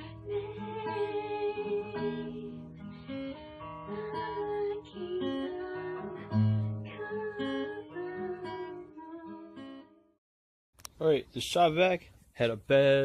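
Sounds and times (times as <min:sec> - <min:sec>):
acoustic guitar music: 0:00.0 - 0:10.2.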